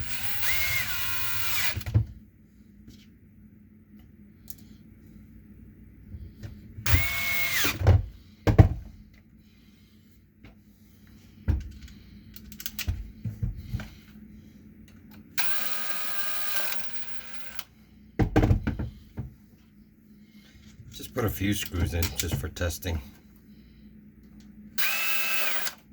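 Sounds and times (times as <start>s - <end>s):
cordless drill motor whining: 0.0s - 2.0s, 6.8s - 8.0s, 15.4s - 17.7s, 24.8s - 25.9s.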